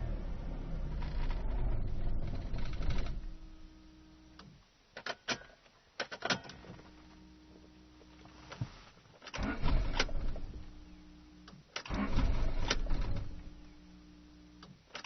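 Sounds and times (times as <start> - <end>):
faint steady hum: 0.0 - 11.8, 12.4 - 15.0
starter motor cranking: 11.9 - 13.4.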